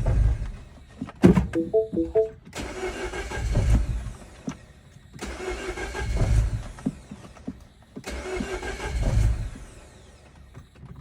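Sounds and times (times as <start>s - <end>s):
car engine cranking on starter: 2.6s - 3.6s, 5.2s - 6.5s, 8.0s - 9.6s.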